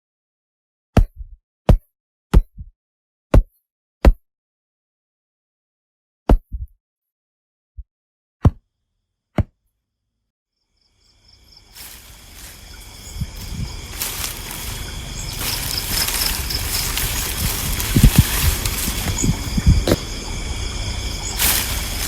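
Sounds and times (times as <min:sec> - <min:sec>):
low rumble: 0:12.0 - 0:22.0.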